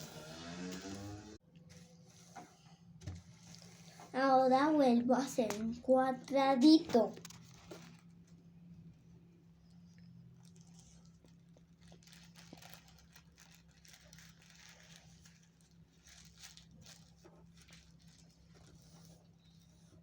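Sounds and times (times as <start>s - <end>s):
tissue paper rustling and crinkling: 6.9s - 8.2s, 10.4s - 20.0s.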